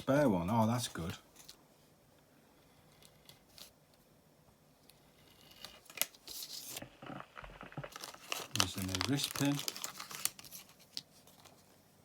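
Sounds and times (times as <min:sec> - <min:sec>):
plastic packaging crinkling and tearing: 0:05.6 - 0:11.6.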